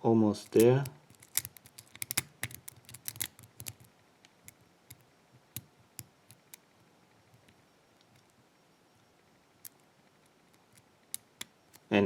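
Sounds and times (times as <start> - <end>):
lock pick clicking: 0.4 - 6.7.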